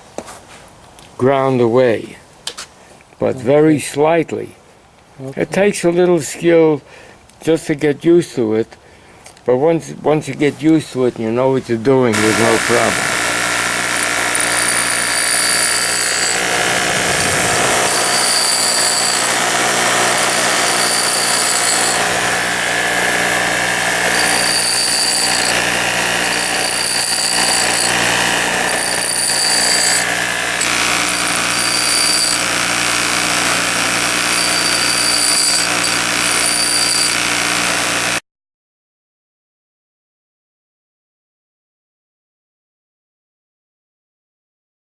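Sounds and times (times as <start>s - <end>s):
bench grinder humming: 12.1s - 38.2s
drill bit grinding whine: 12.1s - 38.2s.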